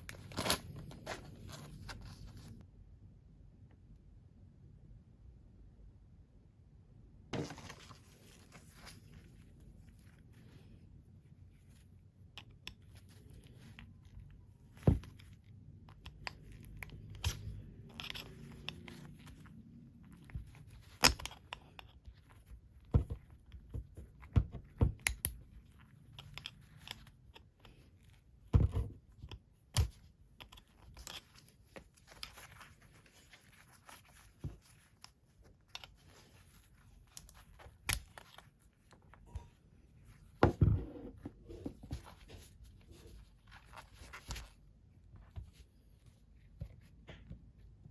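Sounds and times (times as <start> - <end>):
clicks and scraping of hand work: 15.9 - 22.4.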